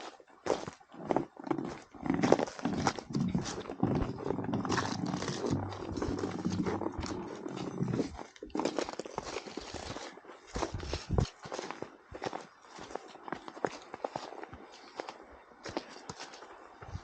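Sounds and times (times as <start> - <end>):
footsteps on frozen trail: 0.0 - 17.0
low steady hum: 2.4 - 11.3.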